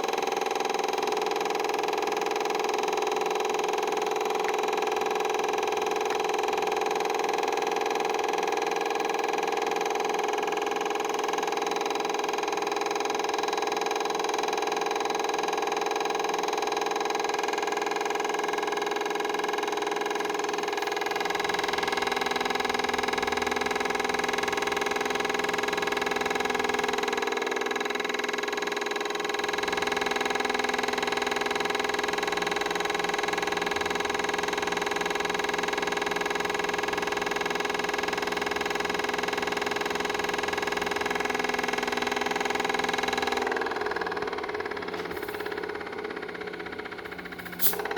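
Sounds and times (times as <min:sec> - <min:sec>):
compressor humming: 0:29.4 - 0:47.9.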